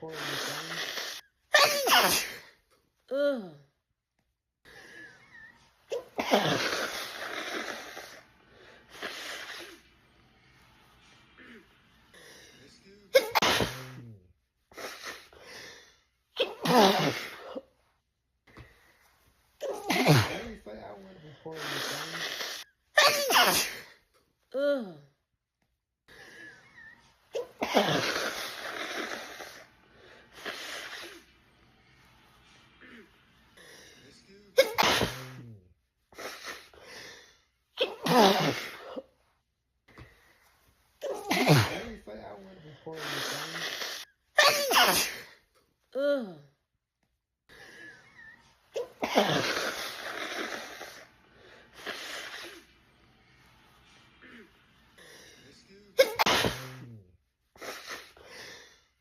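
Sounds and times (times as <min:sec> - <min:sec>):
woman sneezing: 0:00.0 - 0:03.6, 0:05.3 - 0:08.2, 0:13.1 - 0:14.2, 0:16.4 - 0:17.6, 0:19.6 - 0:20.8, 0:21.5 - 0:24.0, 0:26.8 - 0:29.6, 0:34.6 - 0:35.6, 0:37.8 - 0:39.1, 0:41.0 - 0:45.4, 0:48.2 - 0:51.0, 0:56.0 - 0:57.0.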